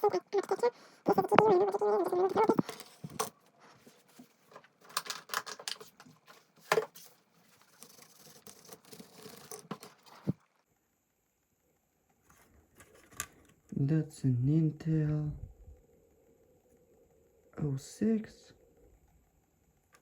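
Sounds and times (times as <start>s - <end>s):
laptop parts clicking and scraping: 2.3s - 10.4s.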